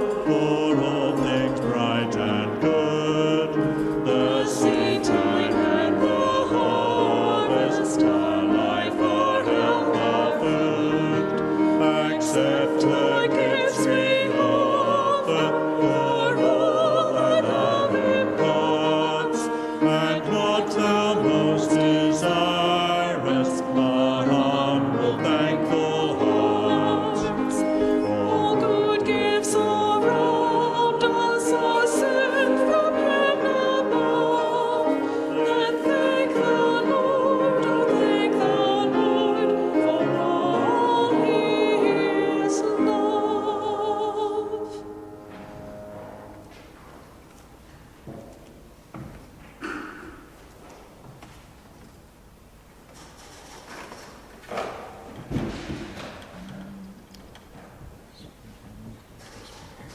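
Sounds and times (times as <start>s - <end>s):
choir singing a hymn: 0.0s - 46.8s.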